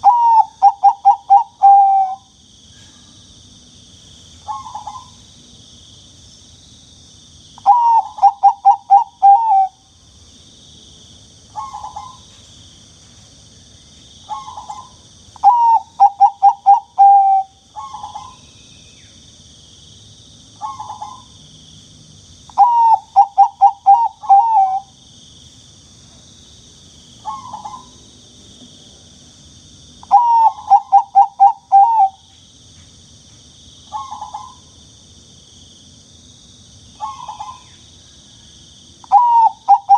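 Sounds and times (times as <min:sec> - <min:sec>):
dove cooing: 0:00.0 - 0:02.2, 0:07.6 - 0:09.8, 0:11.6 - 0:12.2, 0:14.3 - 0:18.4, 0:22.6 - 0:24.9, 0:30.1 - 0:32.2, 0:39.1 - 0:39.9.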